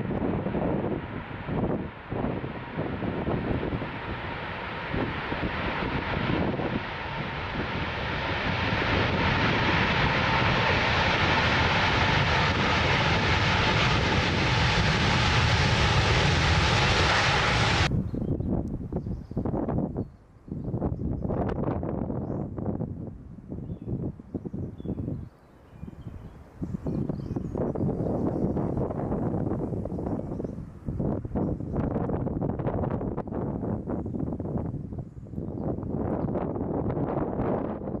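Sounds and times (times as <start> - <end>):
jet engines roaring: 0.0 - 17.9.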